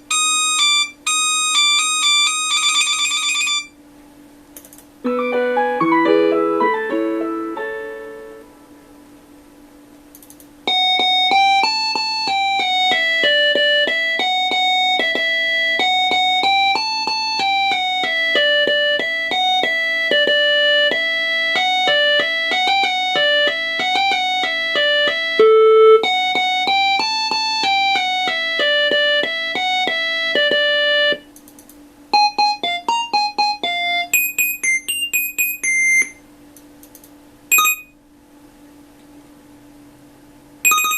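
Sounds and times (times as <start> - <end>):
piano-like ringtone melody: 0.0 - 3.8, 5.0 - 8.5, 32.2 - 36.2, 37.5 - 37.9, 40.7 - 40.9
faint steady hum: 0.0 - 40.9.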